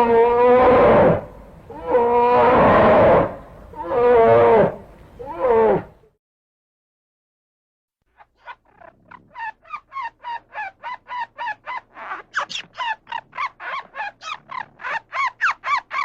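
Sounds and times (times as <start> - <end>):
bird harsh repeated calls: 8.2 - 16.0.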